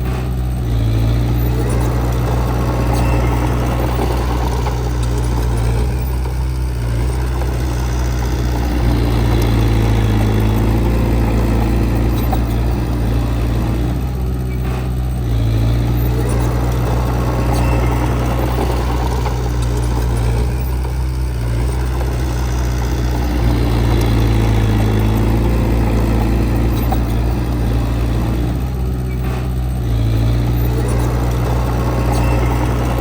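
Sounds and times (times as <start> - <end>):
heavy machine diesel engine running: 0.0 - 33.0.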